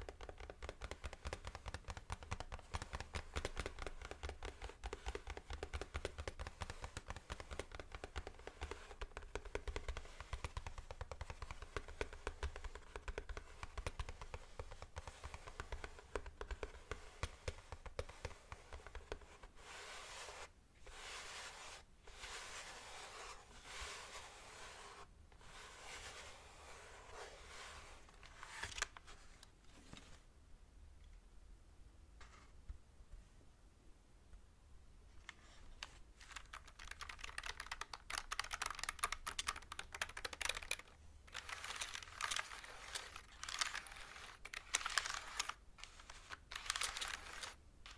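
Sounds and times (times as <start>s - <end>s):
hands brushing over keyboard: 9.8s - 30.2s
typing on keyboard: 36.2s - 45.6s.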